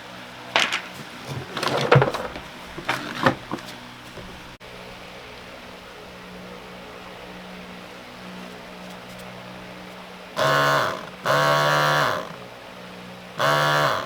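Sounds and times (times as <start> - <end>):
cow mooing: 10.4 - 12.4, 13.4 - 14.0.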